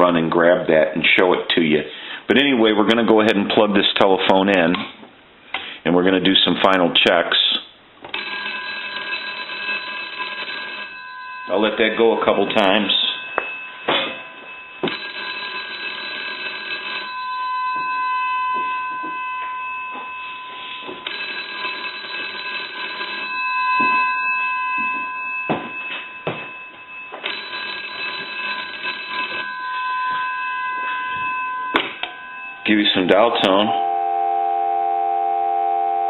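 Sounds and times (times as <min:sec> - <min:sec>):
telephone bell ringing: 0:08.1 - 0:36.0
steady high tone: 0:10.9 - 0:15.5, 0:16.9 - 0:36.0.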